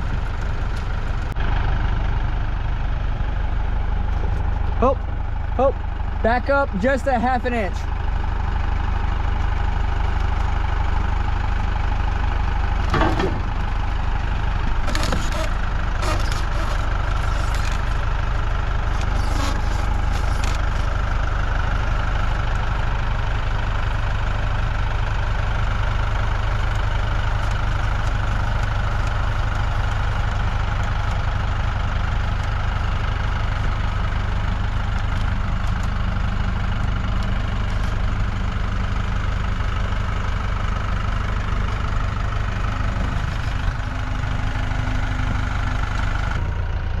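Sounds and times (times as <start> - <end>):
vehicle engine idling: 0.0 - 47.0
clanks and knocks: 12.8 - 13.6.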